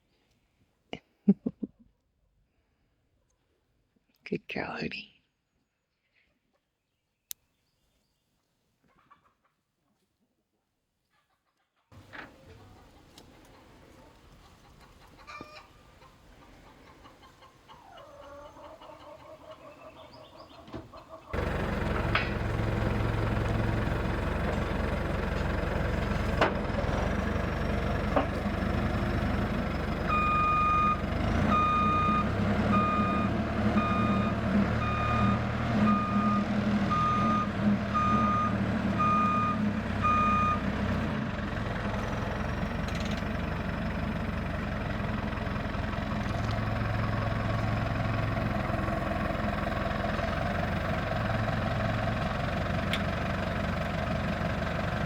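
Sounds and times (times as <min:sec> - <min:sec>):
vehicle engine running: 0:21.3 - 0:55.0
reverse warning beeper: 0:30.1 - 0:40.6.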